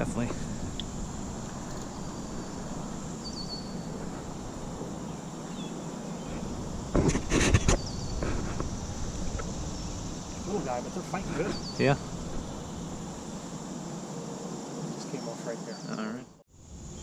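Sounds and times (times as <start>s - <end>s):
low rumble: 0.0s - 13.9s
faint high insect drone: 0.0s - 17.0s
short chirping bird calls: 1.6s - 4.0s, 7.6s - 8.2s, 11.5s - 12.8s
loud knocks and rustles: 6.3s - 9.8s.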